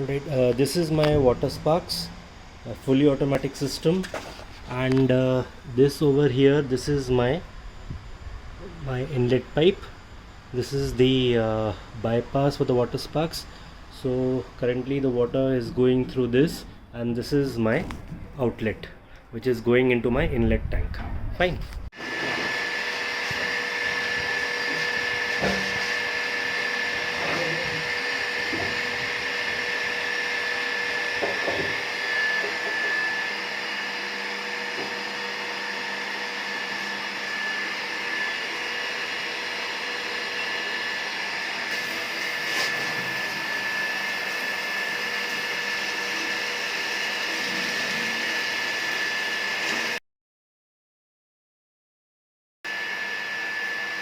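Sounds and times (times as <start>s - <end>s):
water hissing through pipes: 41.7s - 49.0s.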